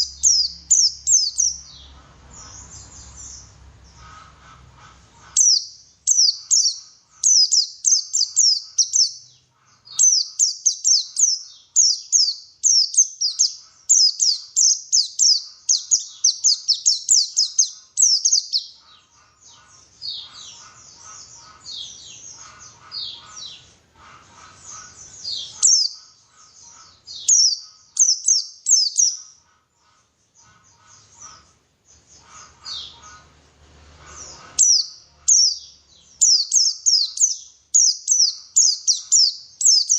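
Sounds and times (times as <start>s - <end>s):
bird singing high twittering notes: 0.0s - 4.0s, 5.4s - 9.3s, 9.9s - 19.0s, 24.7s - 29.3s
fainter lower chirping: 0.0s - 39.9s.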